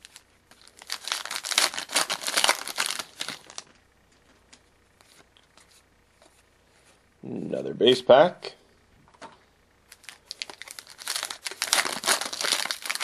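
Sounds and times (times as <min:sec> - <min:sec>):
foil wrapper crinkling and tearing: 0:00.0 - 0:03.7, 0:09.9 - 0:13.0.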